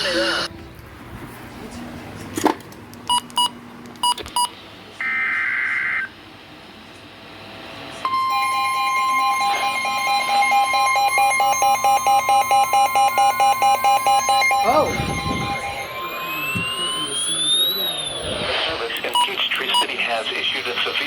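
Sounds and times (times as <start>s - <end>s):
steady warning alarm tone: 8.0s - 21.0s
rapid pulsing alarm beep: 8.1s - 21.0s
short electronic beeps: 12.5s - 20.0s
digital alert tones: 12.7s - 19.9s.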